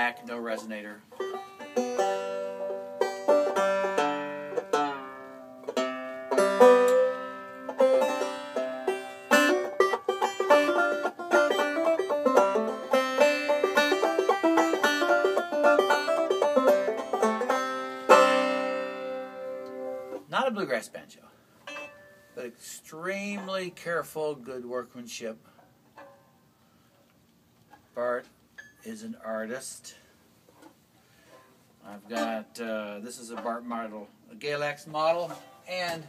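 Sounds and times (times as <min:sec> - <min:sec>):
banjo plucked notes: 0:00.0 - 0:20.3, 0:21.6 - 0:22.5, 0:31.9 - 0:34.0.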